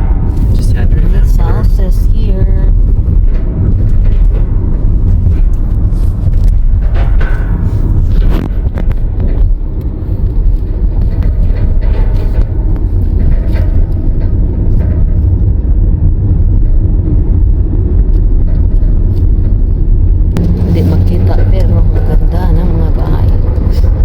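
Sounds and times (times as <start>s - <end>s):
car road and engine rumble: 0.0s - 24.0s.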